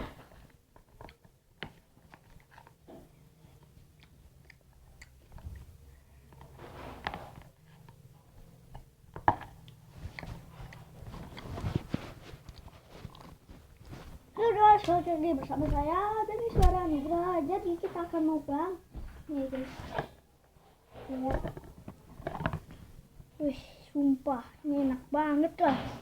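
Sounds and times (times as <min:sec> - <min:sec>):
biting and chewing: 0:01.0 - 0:06.5, 0:09.2 - 0:14.2
soft crunches: 0:09.6 - 0:17.3.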